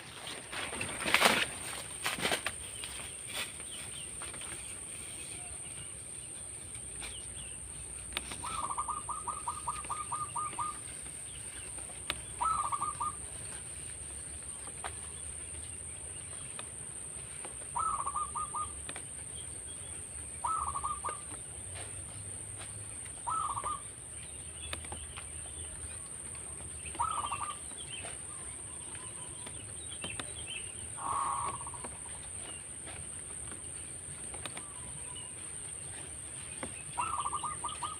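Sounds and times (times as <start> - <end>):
dove cooing: 8.2 - 10.8, 12.3 - 13.3, 17.7 - 18.8, 20.4 - 21.9, 23.2 - 23.8, 26.9 - 28.2, 31.0 - 32.6, 37.0 - 37.9.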